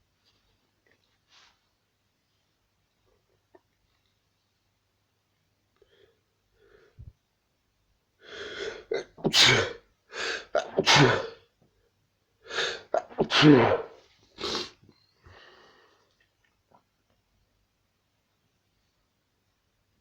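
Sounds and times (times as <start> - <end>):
person sneezing: 8.4 - 11.4, 12.5 - 14.8
sharp sniff: 12.5 - 14.8.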